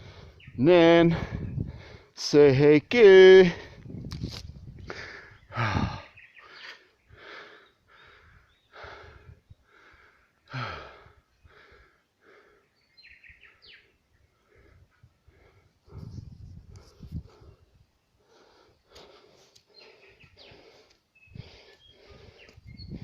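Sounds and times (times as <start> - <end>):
person sighing: 4.9 - 6.1
person breathing in quick puffs: 18.2 - 23.0.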